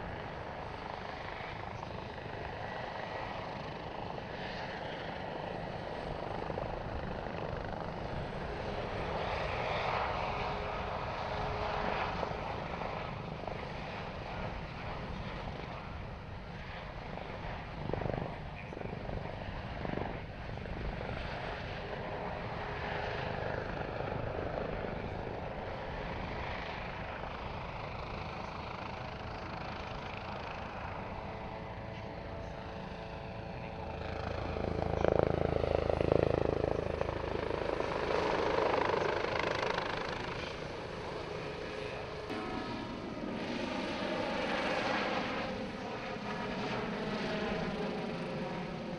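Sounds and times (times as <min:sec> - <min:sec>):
helicopter flying: 0:00.0 - 0:48.9.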